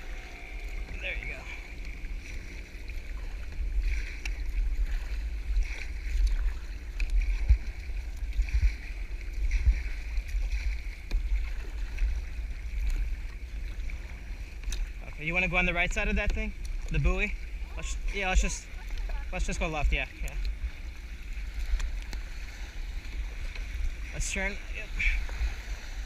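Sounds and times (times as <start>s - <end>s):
low rumble: 0.0s - 26.0s
paddle splashing in water: 0.0s - 26.0s.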